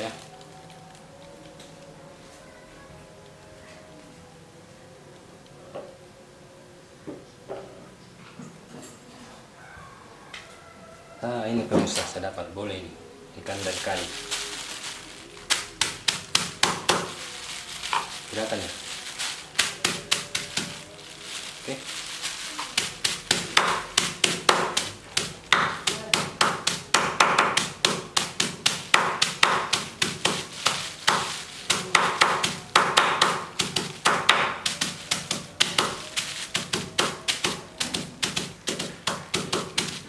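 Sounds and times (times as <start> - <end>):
pounding ginger in plastic bag: 13.4 - 40.0.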